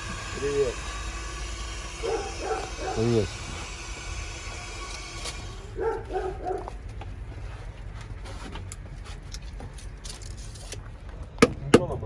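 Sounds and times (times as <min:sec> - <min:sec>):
diesel truck engine idling: 0:00.0 - 0:11.4
dog whining yips: 0:02.0 - 0:03.3, 0:05.7 - 0:06.8.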